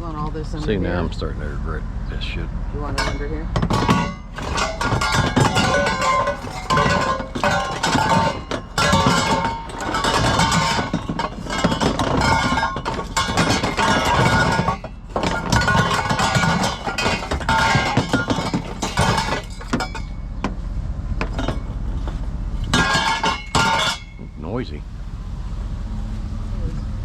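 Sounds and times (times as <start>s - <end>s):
metallic ringing tones: 2.8s - 20.3s, 22.7s - 24.6s
scrap metal clanking: 2.9s - 20.6s, 21.2s - 24.4s.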